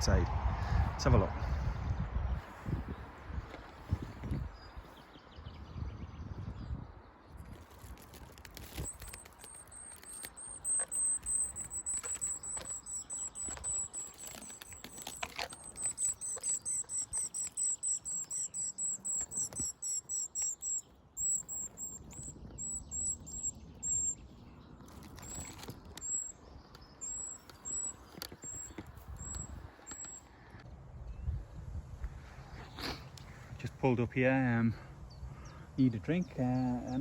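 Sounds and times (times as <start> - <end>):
bird high thin notes: 8.8 - 24.2.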